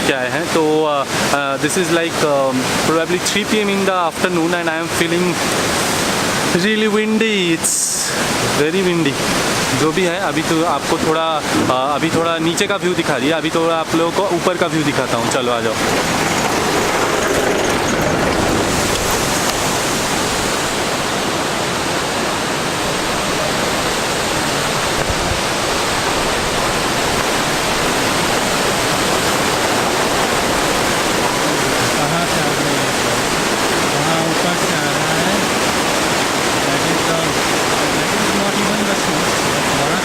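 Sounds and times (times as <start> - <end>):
waterfall rushing: 0.0 - 40.0.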